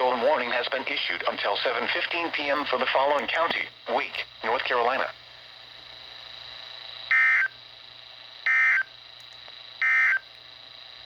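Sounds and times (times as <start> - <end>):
thin high whine: 0.0 - 7.7, 9.8 - 10.3
faint radio hiss: 0.0 - 11.0
digital data tone bursts: 7.1 - 7.6, 8.5 - 8.9, 9.8 - 10.2.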